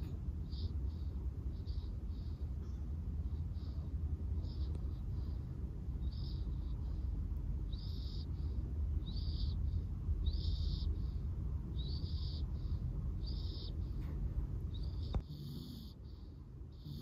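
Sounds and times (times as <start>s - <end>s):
steady low rumble: 0.0s - 17.0s
puppy snoring with high whistle: 14.9s - 16.1s, 16.8s - 17.0s.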